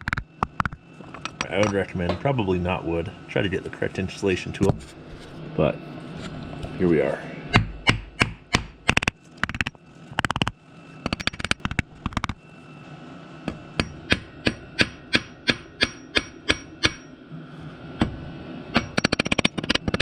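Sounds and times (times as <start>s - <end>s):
hammer striking wood block: 7.5s - 9.6s, 13.8s - 17.0s.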